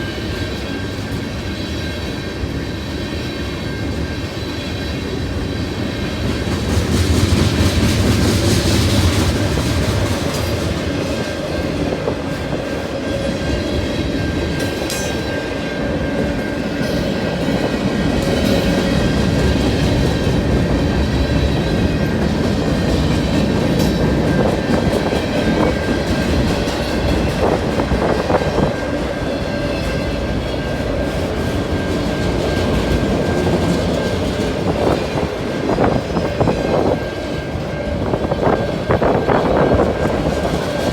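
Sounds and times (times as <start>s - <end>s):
freight train rumbling past: 0.0s - 40.9s.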